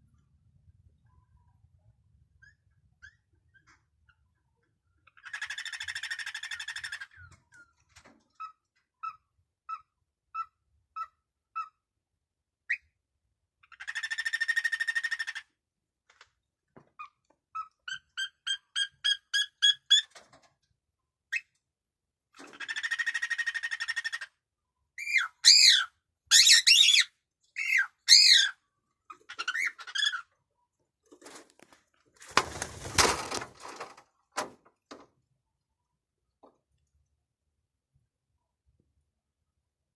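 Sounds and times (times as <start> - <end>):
cockatiel singing: 25.0 - 28.6, 29.3 - 30.3.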